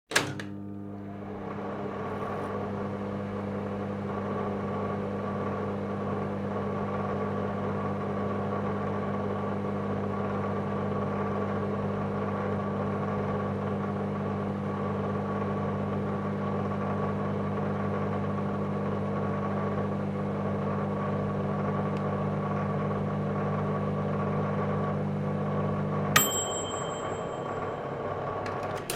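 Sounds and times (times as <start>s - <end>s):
microwave click: 0.1s - 3.1s, 26.2s - 28.9s
microwave oven humming: 0.1s - 28.9s
microwave bell ding: 26.2s - 28.9s.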